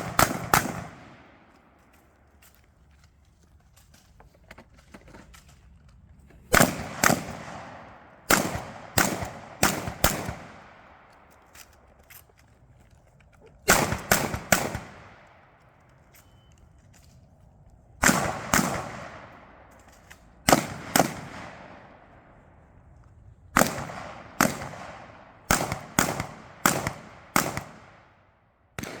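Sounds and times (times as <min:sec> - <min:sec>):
shotgun shots echoing: 0:00.0 - 0:01.5, 0:06.5 - 0:11.1, 0:13.6 - 0:15.3, 0:18.0 - 0:19.7, 0:20.5 - 0:22.1, 0:23.6 - 0:28.2, 0:28.8 - 0:29.0.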